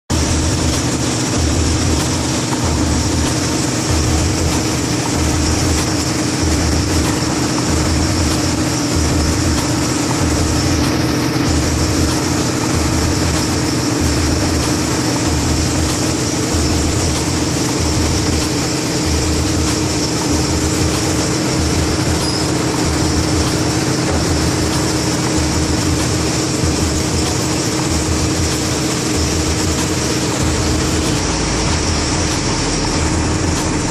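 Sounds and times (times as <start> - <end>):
ferry engine throbbing: 0.1 - 33.9.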